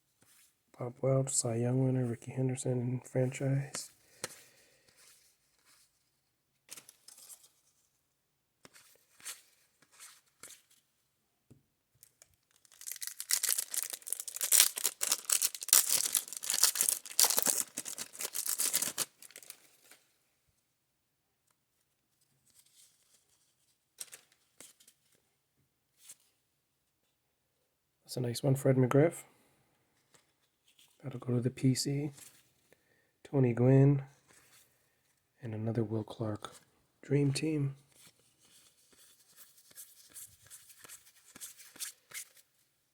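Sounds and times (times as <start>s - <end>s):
cards being handled: 3.7s - 6.1s, 8.6s - 10.8s, 12.0s - 20.0s, 22.5s - 25.2s, 37.9s - 42.5s
plastic wrapper tearing and crinkling: 12.1s - 19.6s.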